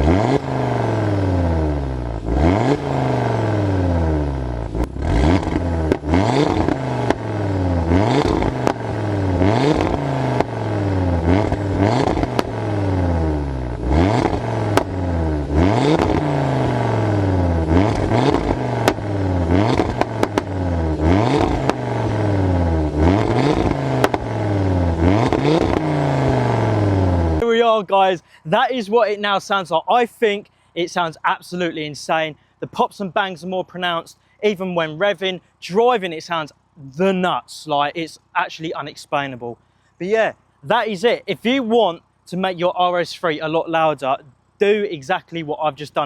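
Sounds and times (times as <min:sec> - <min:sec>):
car engine revving: 0:00.0 - 0:27.4
exhaust pops and crackles: 0:04.7 - 0:13.0, 0:13.7 - 0:27.4.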